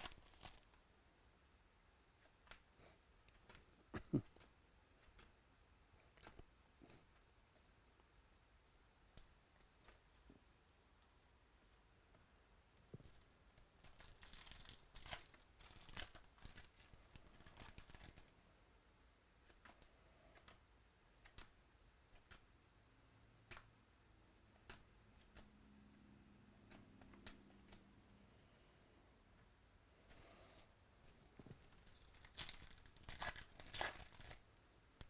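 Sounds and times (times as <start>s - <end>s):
wrapper tearing and crinkling: 0.0s - 0.7s, 13.8s - 18.3s, 31.6s - 34.4s.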